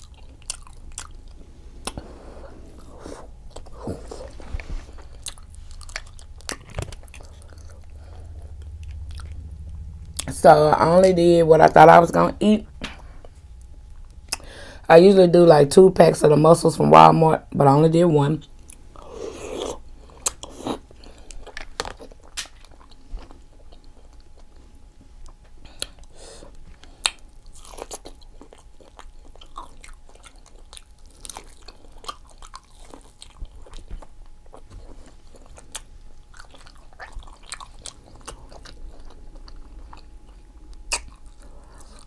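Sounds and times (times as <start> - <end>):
chewing and biting: 0.0 - 2.1, 2.7 - 10.4, 18.6 - 42.0
sharp clicks and wet smacks: 21.5 - 22.7.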